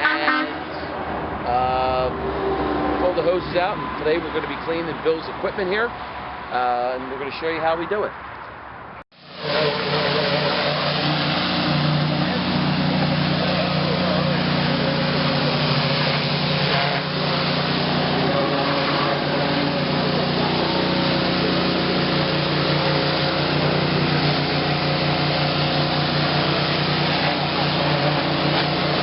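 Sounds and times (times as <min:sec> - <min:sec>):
pressure washer engine hum: 0:09.1 - 0:29.0
high-pressure water spray hiss: 0:09.2 - 0:29.0.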